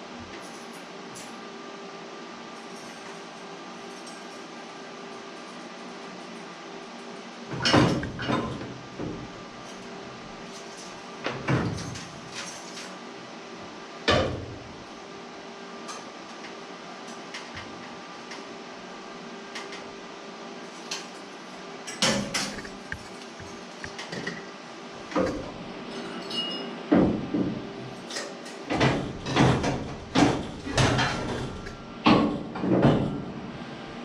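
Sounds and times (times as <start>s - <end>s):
steady hum: 19.8s - 25.9s
loud knocks and clanks: 28.7s - 33.2s.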